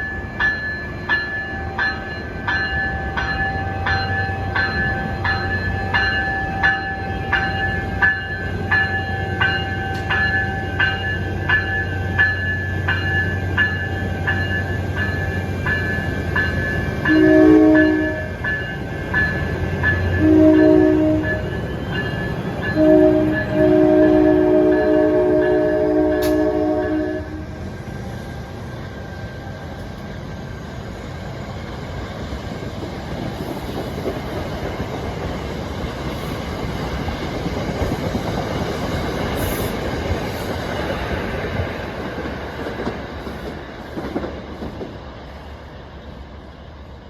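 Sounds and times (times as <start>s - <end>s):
crossing bell dinging: 0.0s - 27.6s
train rumbling: 0.0s - 47.0s
locomotive horn blasts: 17.1s - 18.4s, 20.2s - 21.5s, 22.7s - 27.6s.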